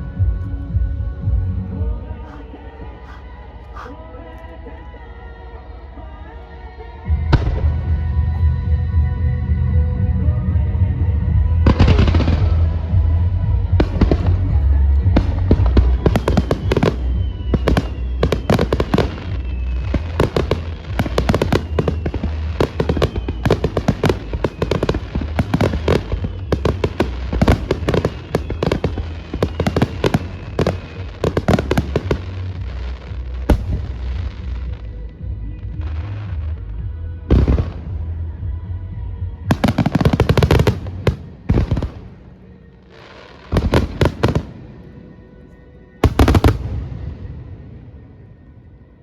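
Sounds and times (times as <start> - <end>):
music: 0.0 - 49.0
whistling firework shells: 2.2 - 2.4, 16.0 - 32.3
fireworks cracking and bursting: 15.2 - 34.6, 39.5 - 42.3, 43.0 - 44.7, 46.0 - 47.0.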